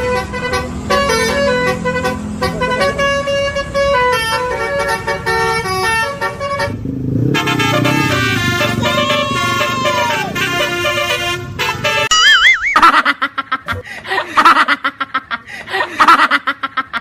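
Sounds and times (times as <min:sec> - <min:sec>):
multi-tone bus horn tune: 0:00.0 - 0:12.4.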